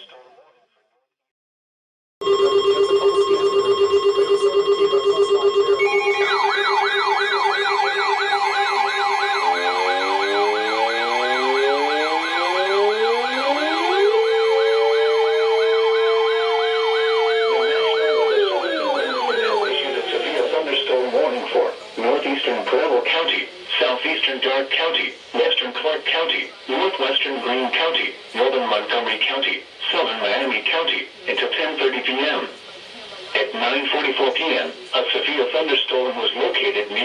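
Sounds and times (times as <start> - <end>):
warning sirens wailing: 3.5 - 22.0.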